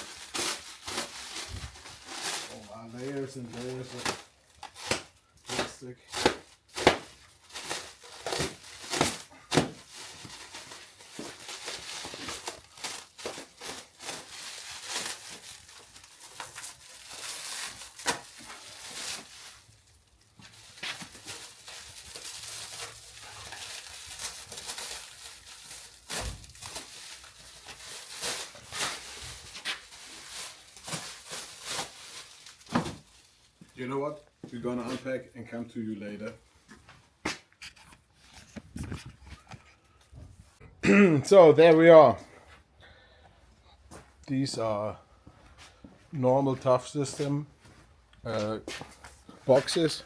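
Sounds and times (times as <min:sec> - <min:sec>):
plastic wrap crinkling and tearing: 0:00.0 - 0:33.8.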